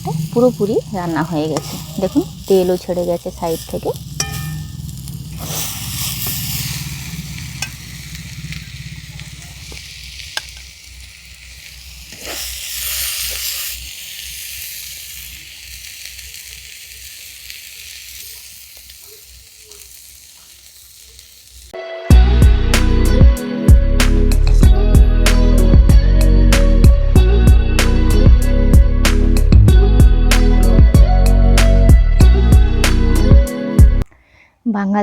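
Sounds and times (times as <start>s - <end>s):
spatula scraping pan: 0.0s - 8.2s
curry sizzling in oil: 0.0s - 21.8s.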